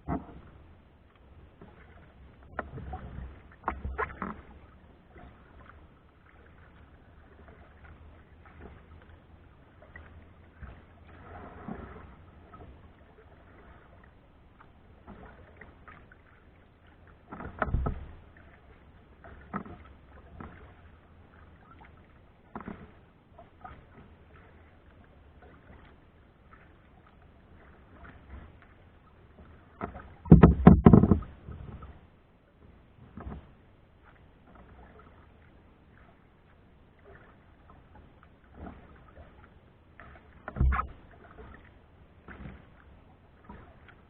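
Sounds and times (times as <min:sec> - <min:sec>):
paddle splashes: 0:00.0 - 0:44.0
knocks on kayak hull: 0:30.2 - 0:31.3.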